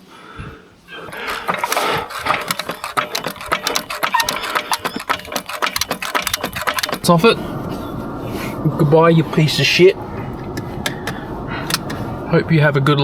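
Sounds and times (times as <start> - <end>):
ratchet wrench clicking rapidly: 1.2 - 7.2.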